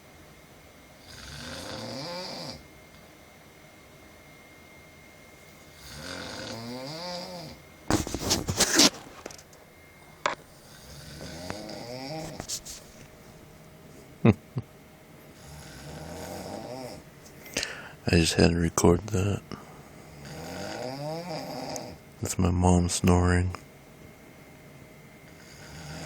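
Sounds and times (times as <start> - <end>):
woman snoring: 1.0 - 2.6, 5.8 - 7.6, 10.5 - 12.4, 15.4 - 17.0, 20.1 - 22.0, 25.3 - 26.0.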